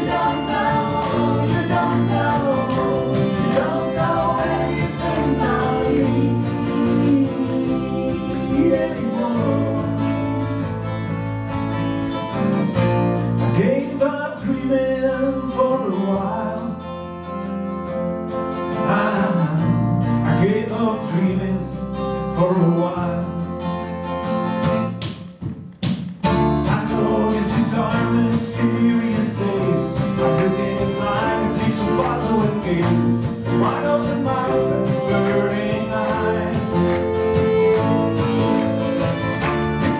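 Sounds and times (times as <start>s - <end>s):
person singing: 0.0s - 10.7s, 26.7s - 39.9s
bass: 0.0s - 39.9s
plucked guitar: 0.0s - 39.9s.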